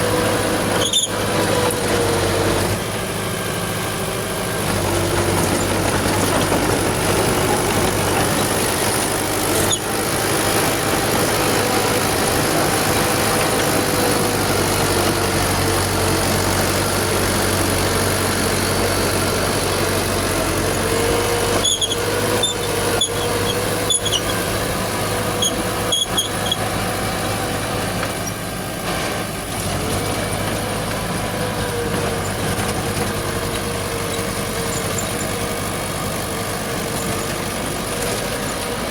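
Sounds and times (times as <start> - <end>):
bulldozer diesel engine: 0.0 - 38.9
metallic squeaks and clicks: 0.8 - 1.8, 4.9 - 9.9, 21.0 - 24.5, 25.2 - 26.7, 34.0 - 35.4.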